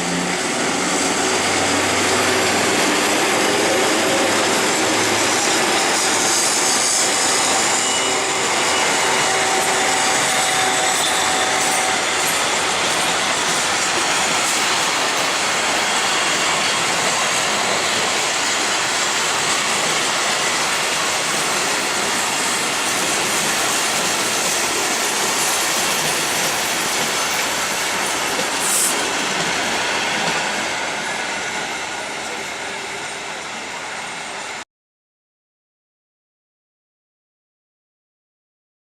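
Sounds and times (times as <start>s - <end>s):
train wheels rolling on track: 0.0s - 34.6s
high-pitched wheel squeal: 5.0s - 13.3s.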